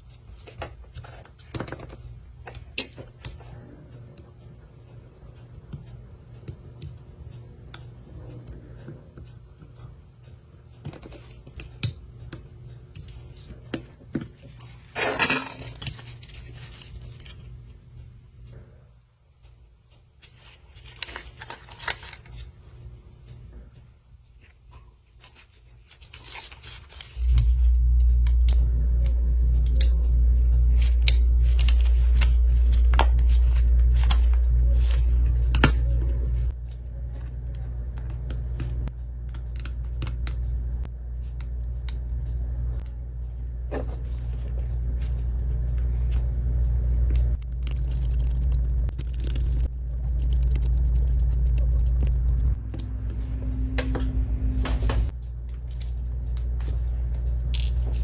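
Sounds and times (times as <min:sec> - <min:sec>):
hot air station hum: 0:27.2 - 0:58.0.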